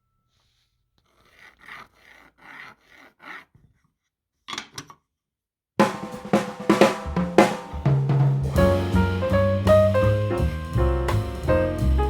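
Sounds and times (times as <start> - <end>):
rasping rub strokes: 0.4 - 3.9
drum-kit music: 5.8 - 12.0.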